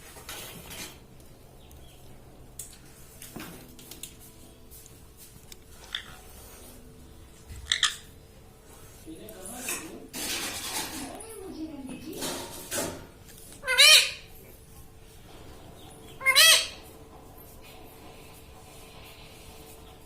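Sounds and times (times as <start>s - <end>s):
parrot wavering calls: 7.6s - 8.1s, 13.6s - 14.3s, 16.2s - 16.9s.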